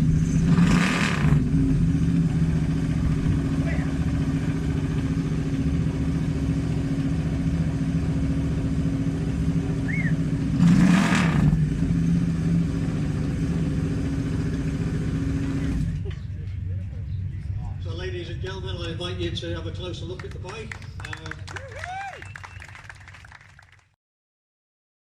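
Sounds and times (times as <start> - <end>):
motorcycle throttle rev: 0.0 - 16.1
motorcycle engine idling: 1.4 - 10.6.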